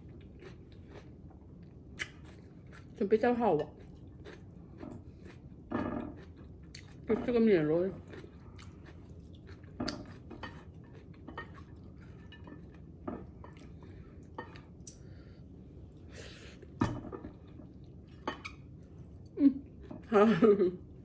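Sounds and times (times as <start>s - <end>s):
dishes and cutlery clinking: 9.8s - 13.7s.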